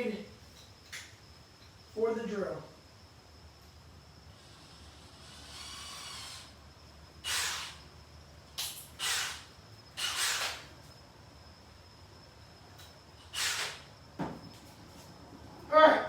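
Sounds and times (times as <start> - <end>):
bursts of hissing air: 4.3 - 8.0, 8.6 - 10.8, 13.2 - 14.0.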